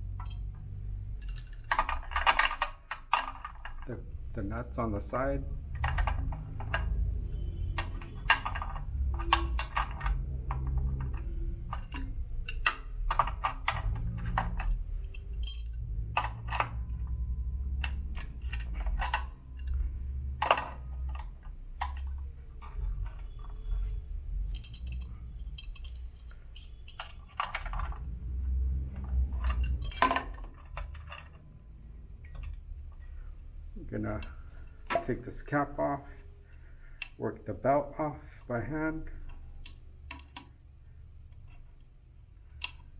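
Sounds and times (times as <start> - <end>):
metal tools clinking on bolts: 0.1 - 4.0, 5.7 - 31.5.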